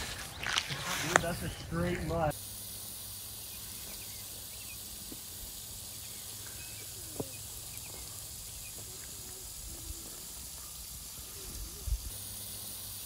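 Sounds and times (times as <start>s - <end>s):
steady high hiss: 0.0s - 13.0s
faint bird chirps: 5.9s - 13.0s.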